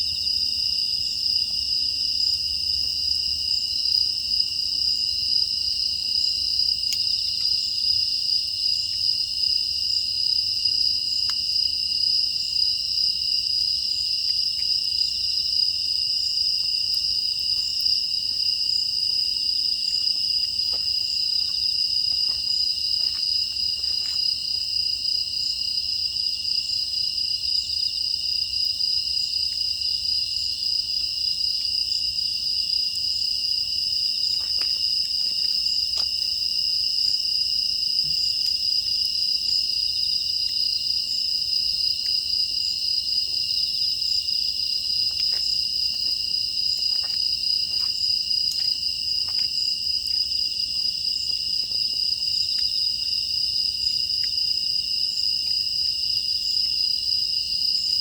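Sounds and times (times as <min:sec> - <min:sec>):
insects chirring: 0:00.2 - 0:58.0
wood fire crackling: 0:13.8 - 0:25.2.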